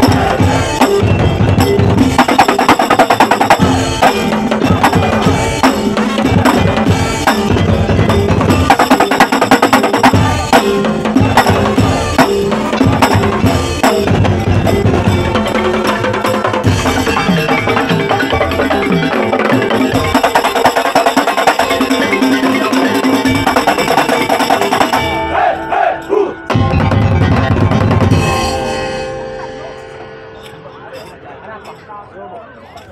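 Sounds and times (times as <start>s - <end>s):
fast dense drumming: 0.0s - 25.0s, 26.5s - 28.6s
ringing pitched tones: 11.1s - 31.9s.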